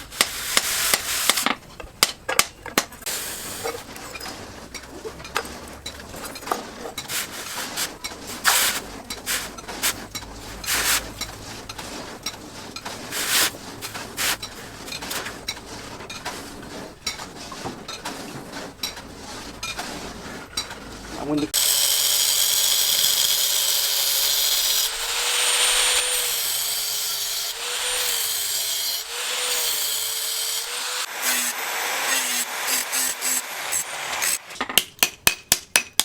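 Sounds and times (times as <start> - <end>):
scraping on steel blade: 0.0 - 1.6, 5.9 - 21.2.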